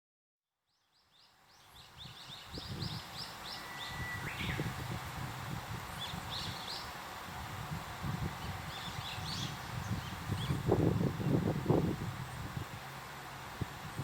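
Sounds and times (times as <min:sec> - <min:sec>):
thin steady whistle: 0:03.5 - 0:04.7
birds chirping: 0:08.4 - 0:11.4.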